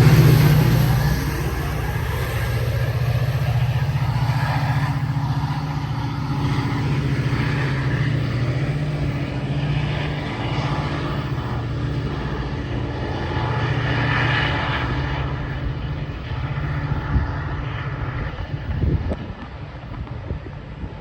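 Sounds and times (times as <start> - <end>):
diesel locomotive engine drone: 0.0 - 21.0.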